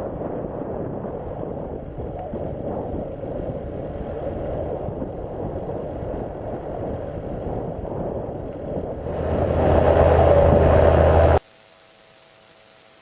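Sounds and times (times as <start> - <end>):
gusty wind buffeting microphone: 0.0 - 11.4
steady drone: 9.0 - 13.0.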